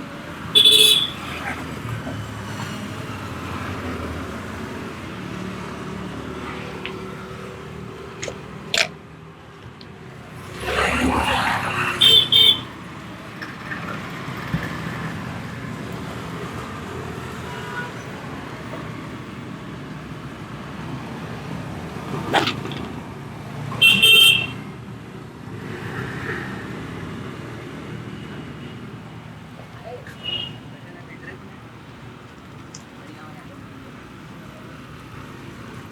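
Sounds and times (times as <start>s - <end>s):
street traffic: 0.0s - 35.9s
vehicle horn toots: 0.6s - 1.2s, 23.8s - 24.6s.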